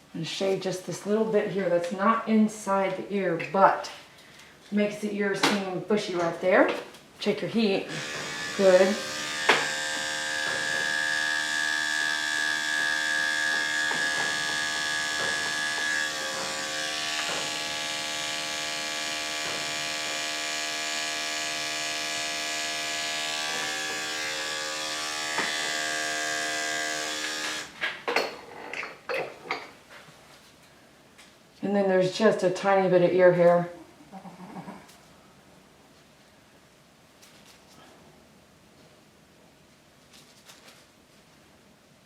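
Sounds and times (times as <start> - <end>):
electric clippers humming: 7.8 - 27.8.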